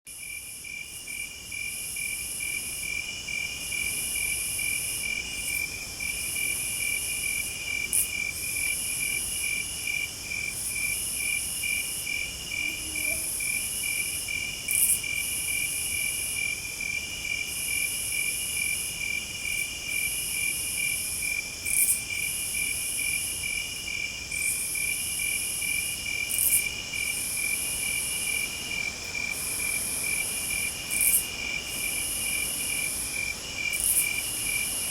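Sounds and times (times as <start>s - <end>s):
crickets chirping: 0.1s - 34.9s
high insect buzz: 17.2s - 34.9s.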